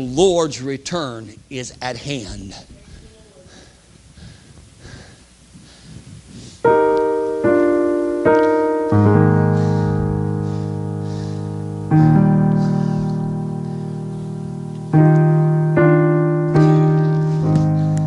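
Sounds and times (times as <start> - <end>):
keyboard sustained chords: 6.6 - 18.0.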